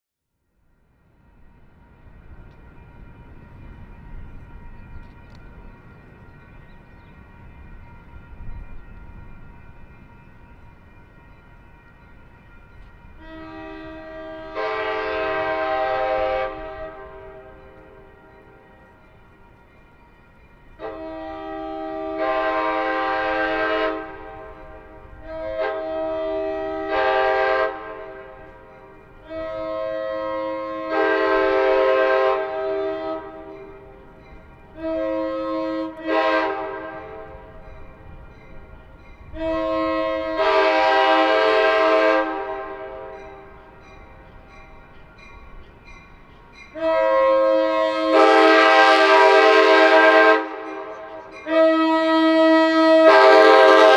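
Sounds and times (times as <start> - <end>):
locomotive air horn blasts: 13.1 - 18.7, 20.8 - 33.9, 34.8 - 37.7, 39.3 - 43.5, 46.7 - 53.9.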